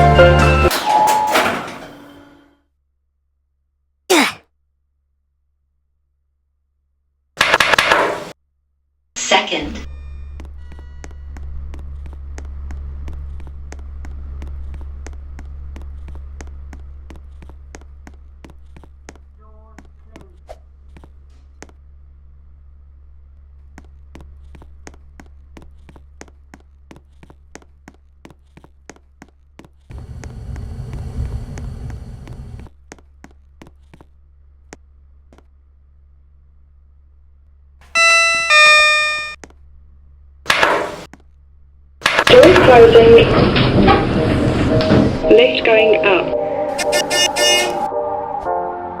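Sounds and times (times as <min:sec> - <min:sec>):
loud rumble: 0:29.9 - 0:32.7, 0:42.2 - 0:46.2
lift low hum: 0:29.9 - 0:48.6.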